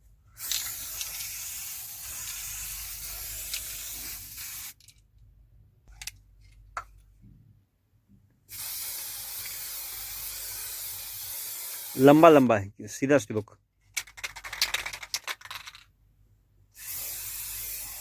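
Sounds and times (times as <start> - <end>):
aerosol spray can hissing: 0.4 - 4.8, 8.5 - 12.4, 16.8 - 18.0.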